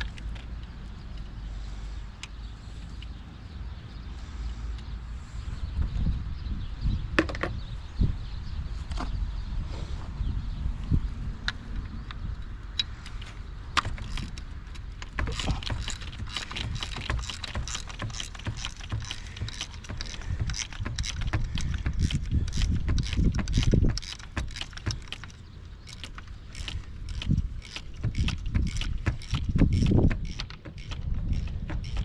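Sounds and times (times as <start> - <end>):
tools and parts clicking: 0.0 - 1.4, 11.4 - 32.0
low knocks and thumps: 13.8 - 25.3, 26.0 - 32.0.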